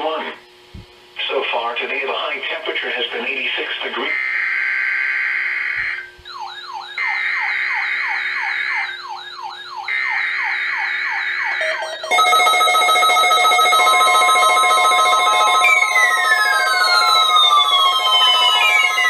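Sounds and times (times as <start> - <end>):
warbling siren alert: 4.1 - 19.0
buzzing digital data tones: 11.5 - 19.0
alert tones and beeps: 11.6 - 19.0.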